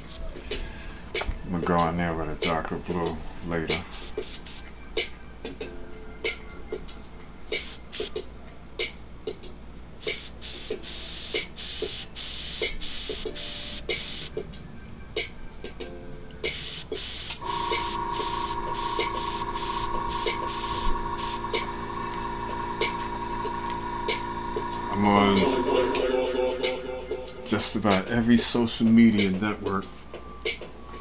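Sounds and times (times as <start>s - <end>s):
airbrush spraying hiss: 3.8s - 4.6s, 7.6s - 8.2s, 10.0s - 14.3s, 16.5s - 21.9s
steady hum: 17.3s - 28.8s.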